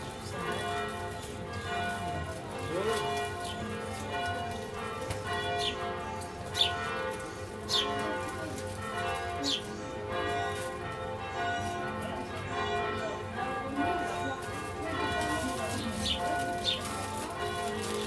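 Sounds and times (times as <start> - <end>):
church bells ringing: 0.0 - 18.0.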